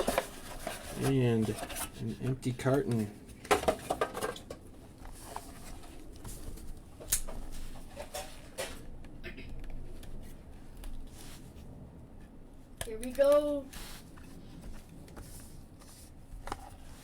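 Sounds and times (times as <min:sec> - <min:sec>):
cardboard rustles and taps: 0:13.8 - 0:17.0.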